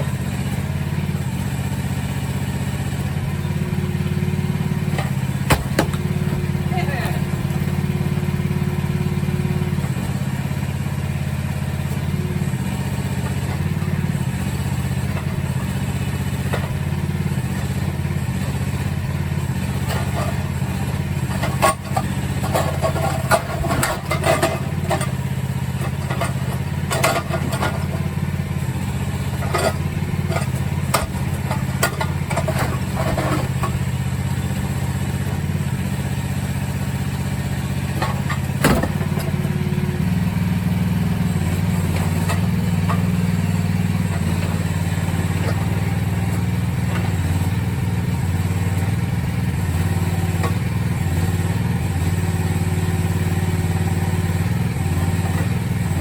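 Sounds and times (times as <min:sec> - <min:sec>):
excavator engine running: 0:00.0 - 0:56.0
concrete pieces knocking and clattering: 0:04.9 - 0:06.5, 0:21.2 - 0:28.1, 0:29.3 - 0:34.0.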